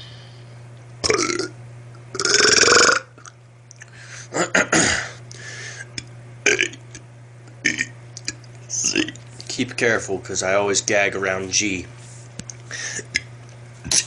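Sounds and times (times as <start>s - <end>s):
steady low hum: 0.0s - 14.0s
man belching: 1.0s - 3.3s, 6.4s - 6.8s, 7.6s - 7.9s.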